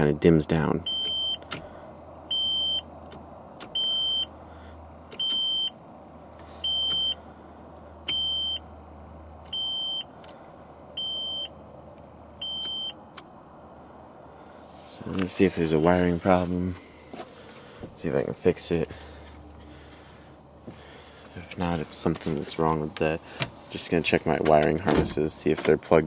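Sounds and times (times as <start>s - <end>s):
car warning chime beeping: 0.8s - 1.6s, 2.3s - 2.9s, 3.7s - 4.4s, 5.1s - 5.8s, 6.6s - 7.2s, 8.0s - 8.7s, 9.5s - 10.1s, 11.0s - 11.6s, 12.4s - 13.1s.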